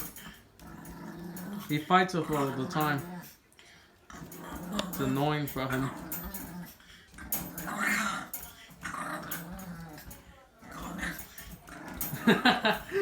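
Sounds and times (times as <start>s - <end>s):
dog growling: 0.0s - 13.0s
sharp cage clicks: 4.2s - 12.8s.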